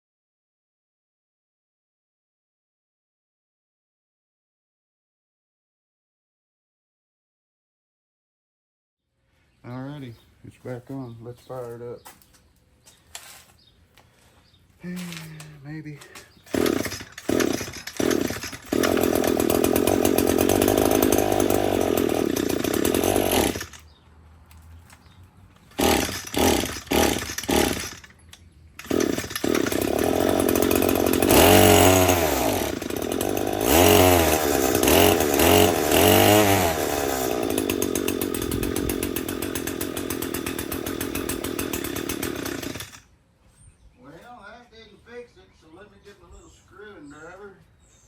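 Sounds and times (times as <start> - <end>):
string trimmer engine running: 14.9 - 43.1.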